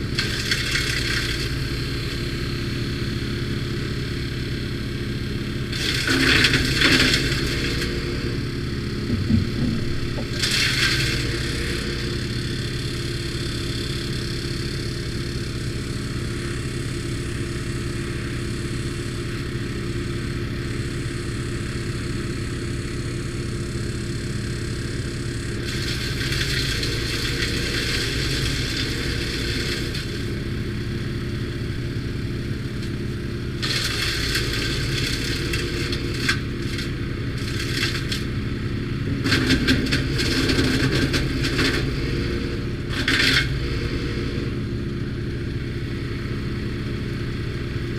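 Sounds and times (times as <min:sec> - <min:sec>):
wood being shredded: 0:00.0 - 0:02.4, 0:05.6 - 0:14.6, 0:25.1 - 0:44.3
wood chipper running: 0:00.0 - 0:47.9.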